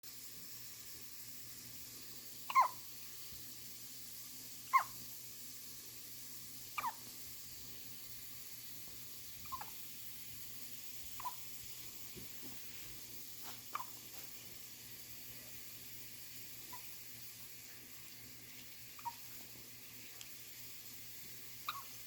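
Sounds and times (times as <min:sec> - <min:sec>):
faint steady hum: 0:00.0 - 0:22.0
baby hiccupping: 0:02.5 - 0:02.8, 0:04.7 - 0:04.9, 0:06.8 - 0:07.0, 0:09.4 - 0:09.8, 0:11.2 - 0:11.4, 0:13.7 - 0:14.0, 0:19.0 - 0:19.3, 0:21.7 - 0:22.0.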